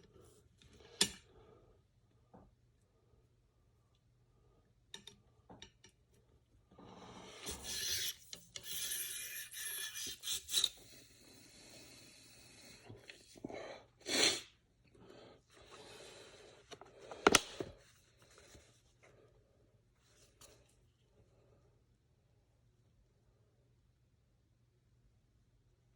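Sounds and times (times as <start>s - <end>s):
cleaning rod rasping in barrel: 7.3s - 11.0s.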